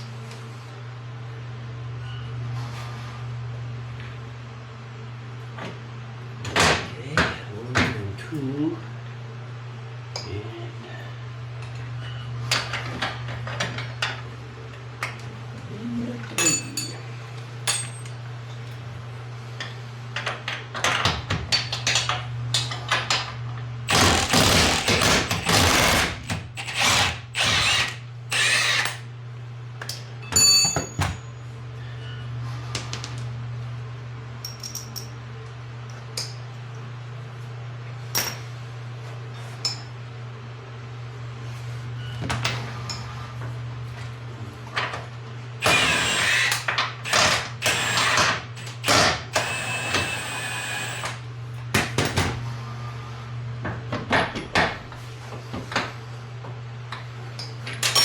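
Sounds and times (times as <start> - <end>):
steady low hum: 0.0 - 58.0
tools clinking and knocking: 16.4 - 17.0
impact wrench bursts: 23.9 - 29.0, 45.6 - 51.2.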